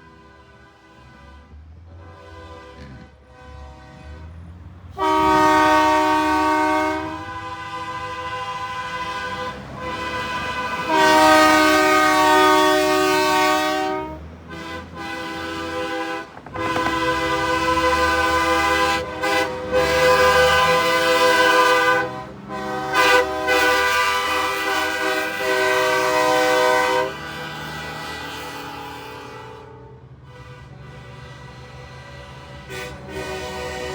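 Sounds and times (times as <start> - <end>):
truck train horns blowing chord: 0.0 - 33.9.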